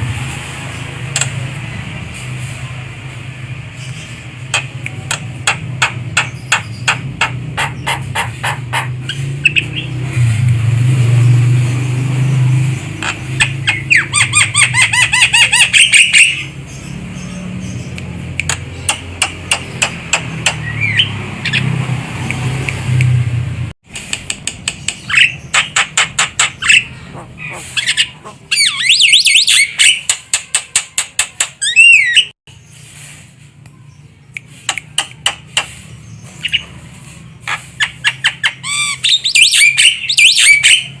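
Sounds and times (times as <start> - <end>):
myna calling: 4.5 - 9.9, 25.1 - 32.3.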